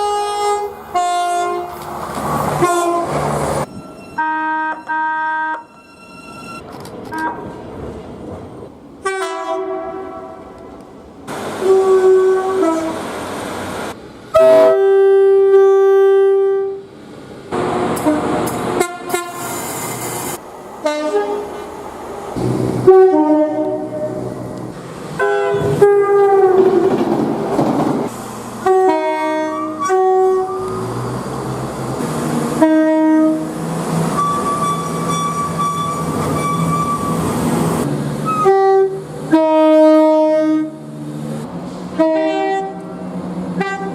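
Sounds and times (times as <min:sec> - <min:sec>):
train horns: 0:00.0 - 0:01.8, 0:02.5 - 0:06.0, 0:07.1 - 0:07.6, 0:09.0 - 0:10.8, 0:11.6 - 0:13.1, 0:14.3 - 0:16.9, 0:17.5 - 0:21.7, 0:22.4 - 0:26.9, 0:28.6 - 0:31.1, 0:32.5 - 0:37.3, 0:38.2 - 0:40.9, 0:41.9 - 0:43.0, 0:43.6 - 0:43.9
passing train noise: 0:00.0 - 0:43.9.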